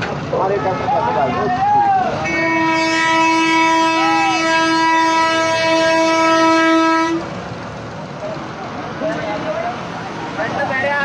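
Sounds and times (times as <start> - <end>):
vehicle horn blast: 2.2 - 7.2.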